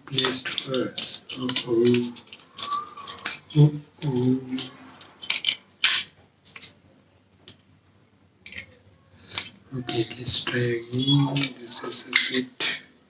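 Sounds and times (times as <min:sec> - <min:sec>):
murmured voice: 0:00.1 - 0:05.0, 0:08.9 - 0:12.9
plastic remote parts clicking: 0:08.4 - 0:12.4.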